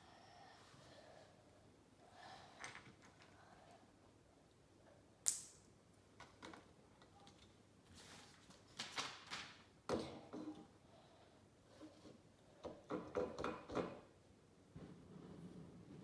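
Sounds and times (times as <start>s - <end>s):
plastic bricks snapping together: 5.2s - 5.6s.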